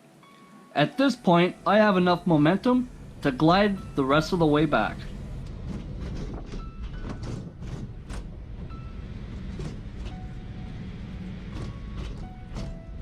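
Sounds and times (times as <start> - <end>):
low rumble of wheels on rail: 1.2 - 13.0
clicks and clatters: 5.4 - 8.4.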